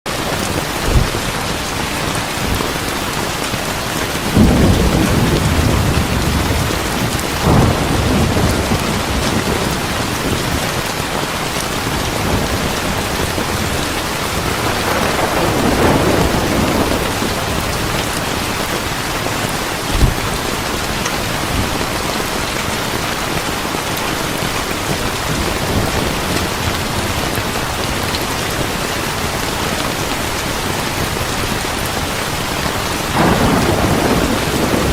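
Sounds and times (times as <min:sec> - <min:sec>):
heavy rain falling: 0:00.1 - 0:34.9
thunder rolling: 0:00.4 - 0:03.0, 0:04.1 - 0:10.8, 0:11.9 - 0:22.6, 0:33.2 - 0:34.9
low thump: 0:00.8 - 0:01.2, 0:19.9 - 0:20.5.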